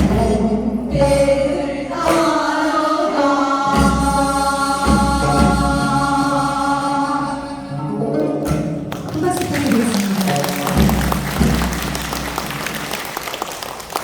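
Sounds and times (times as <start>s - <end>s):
drum strikes: 0.0s - 6.4s, 8.4s - 13.0s
woman singing folk song: 0.0s - 8.5s
instrumental accompaniment: 0.0s - 14.0s.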